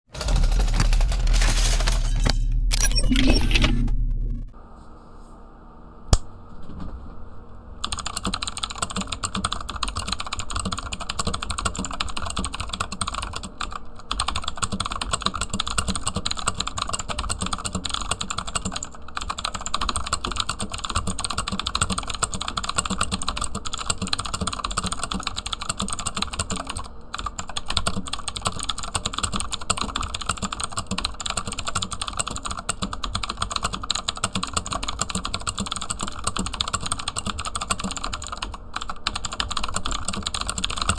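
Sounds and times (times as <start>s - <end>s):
mechanical keyboard typing: 0.1s - 4.5s, 7.8s - 40.9s.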